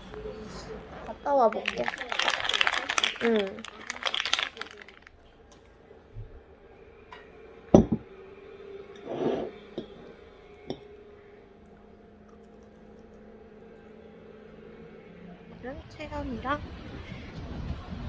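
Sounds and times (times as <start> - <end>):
faint steady hum: 0.0 - 17.3
clinks and knocks: 7.8 - 8.1.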